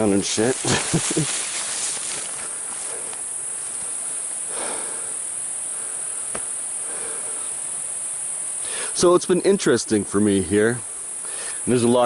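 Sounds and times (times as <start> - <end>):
rustling footsteps on forest trail: 0.0 - 7.8
high-pitched insect chorus: 0.0 - 12.0.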